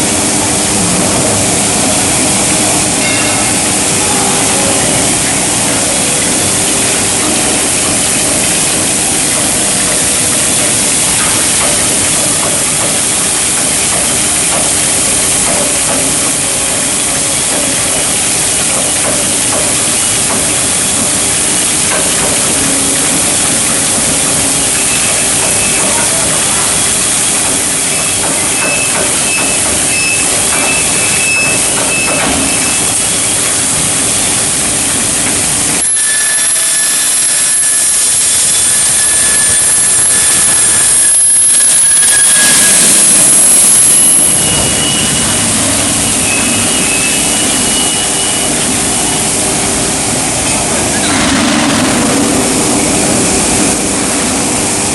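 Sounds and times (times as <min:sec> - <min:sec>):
welding machine hissing and rumbling: 0:00.0 - 0:54.9
thin high steady tones: 0:00.1 - 0:18.6, 0:35.6 - 0:51.2.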